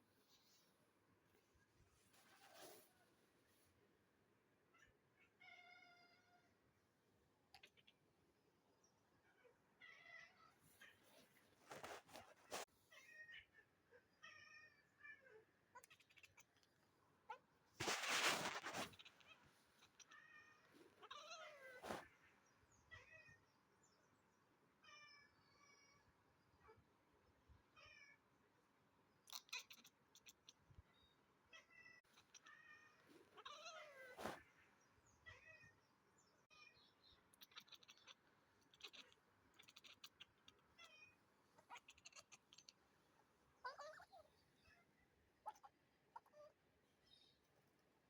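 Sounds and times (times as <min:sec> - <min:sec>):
cat meowing and chirping: 0:04.8 - 0:06.5, 0:07.6 - 0:08.0, 0:12.9 - 0:16.7, 0:17.3 - 0:22.0, 0:29.3 - 0:34.5, 0:35.2 - 0:35.8, 0:36.5 - 0:42.8, 0:43.6 - 0:47.3.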